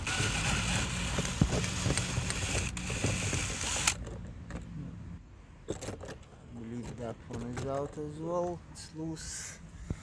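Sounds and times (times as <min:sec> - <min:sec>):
drill running in reverse: 0:00.0 - 0:04.0.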